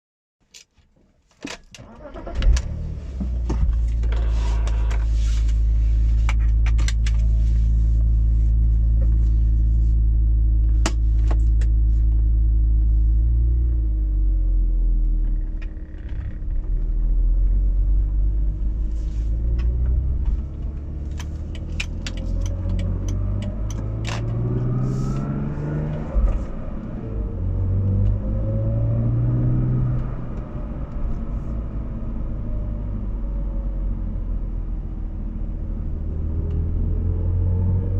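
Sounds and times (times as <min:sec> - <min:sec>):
car starting and idling: 0:01.5 - 0:28.4
rising hum of accelerating car: 0:11.6 - 0:37.9.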